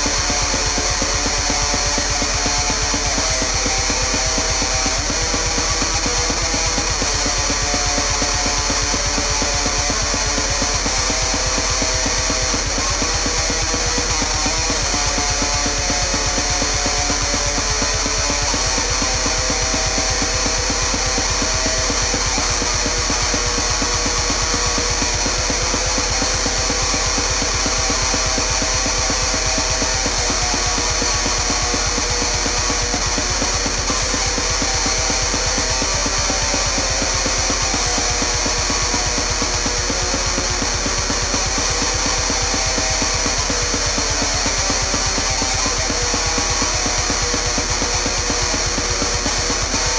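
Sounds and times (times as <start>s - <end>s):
heavy metal music: 0.0s - 49.9s.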